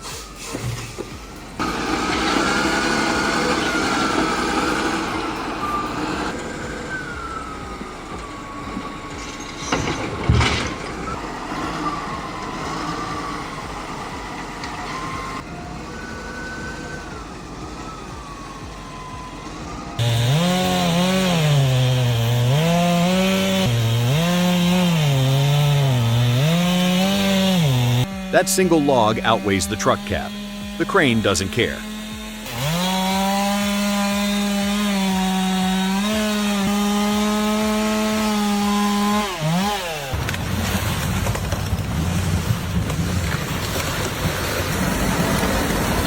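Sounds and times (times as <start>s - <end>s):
motorised cutting whine: 0.0s - 40.1s
chainsaw revving: 1.2s - 7.4s, 20.0s - 41.3s.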